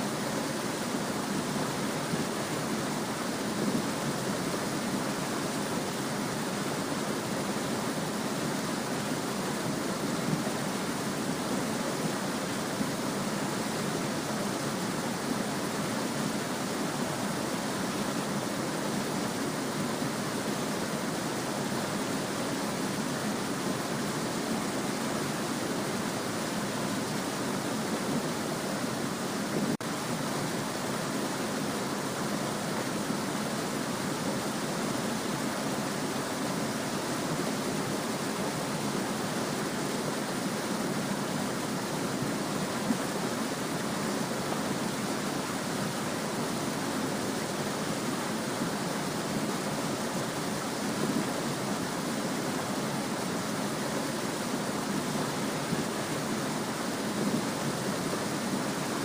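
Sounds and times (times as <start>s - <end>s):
small stream babbling: 0.0s - 59.0s.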